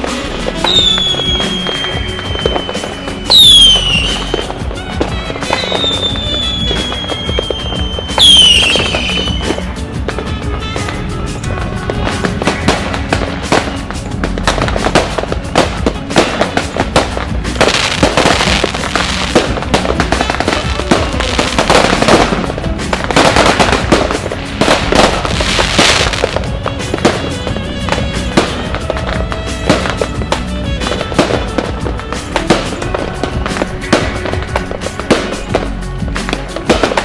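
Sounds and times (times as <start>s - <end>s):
firecrackers popping and crackling: 0.0s - 37.0s.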